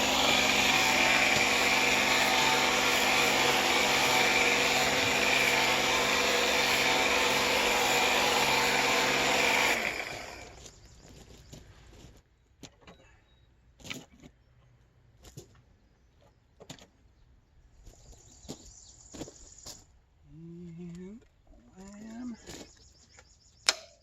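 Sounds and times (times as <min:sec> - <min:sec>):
pressure washer whining: 0:00.0 - 0:10.6.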